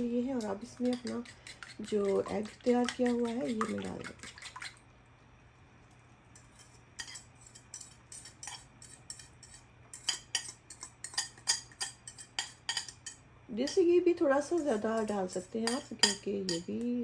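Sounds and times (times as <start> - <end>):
metal spoon clinking on pan: 0.4 - 2.3, 6.4 - 13.8, 14.6 - 16.8.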